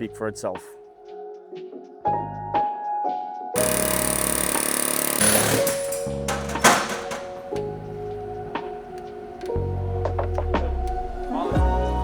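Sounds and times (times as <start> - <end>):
background music: 0.0 - 12.0
pneumatic air tool bursts: 3.6 - 7.5.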